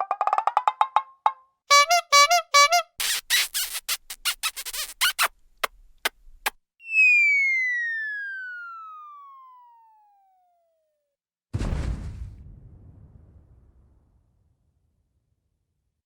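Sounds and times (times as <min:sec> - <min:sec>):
brass-like honks: 0:01.7 - 0:03.0
falling whistle: 0:06.8 - 0:10.4.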